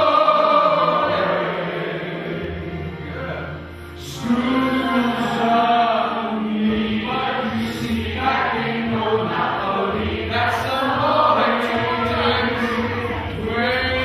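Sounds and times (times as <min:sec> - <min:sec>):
musical accompaniment: 0:00.0 - 0:14.0
person singing: 0:04.0 - 0:14.0.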